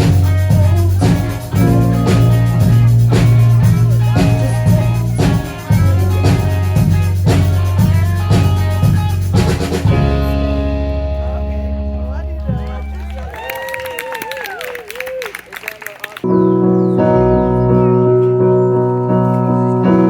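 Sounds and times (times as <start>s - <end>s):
drum kit beat: 0.0s - 11.9s
bass guitar: 0.0s - 14.6s, 16.2s - 20.0s.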